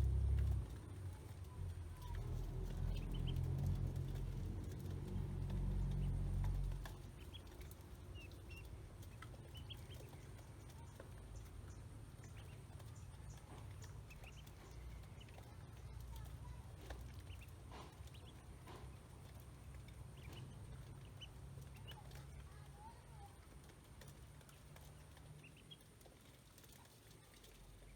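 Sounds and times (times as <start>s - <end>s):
low rumble: 0.0s - 7.4s
ducklings peeping: 1.9s - 22.6s, 24.0s - 27.9s.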